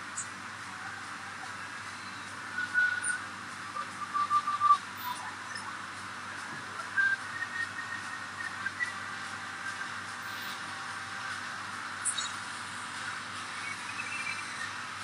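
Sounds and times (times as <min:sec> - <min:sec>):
high whistle-like notes: 0:01.9 - 0:05.8, 0:06.6 - 0:10.8.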